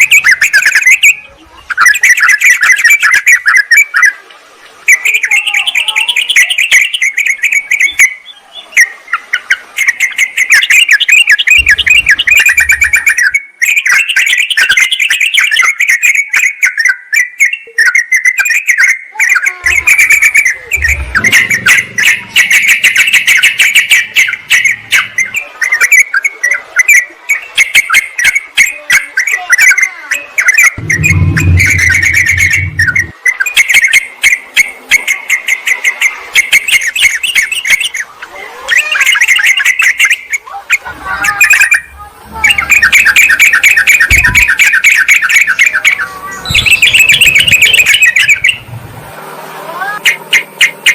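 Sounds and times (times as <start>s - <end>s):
bulbuls chattering and calling: 0.0s - 50.9s
faint low rumble: 19.7s - 25.4s, 30.8s - 33.1s.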